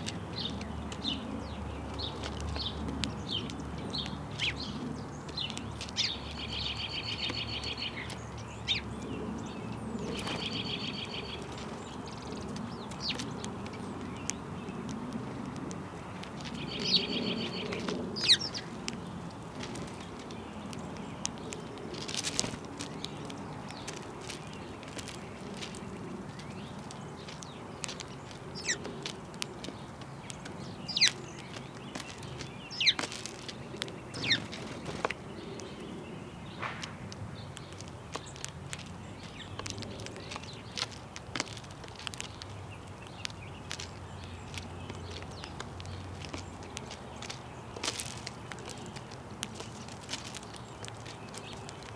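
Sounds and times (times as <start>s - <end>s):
small songbirds chirping: 0.0s - 51.9s
bird trill: 6.0s - 8.9s, 10.1s - 11.5s, 16.6s - 18.7s, 34.1s - 35.0s.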